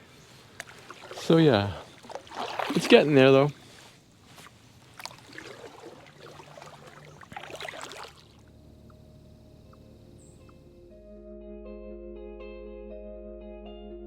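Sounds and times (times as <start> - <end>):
kayak paddle splashing: 0.0 - 10.6
soft background music: 8.4 - 14.0.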